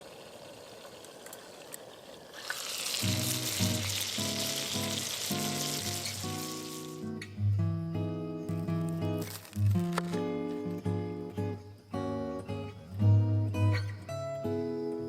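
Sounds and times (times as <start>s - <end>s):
food sizzling: 0.0s - 7.3s.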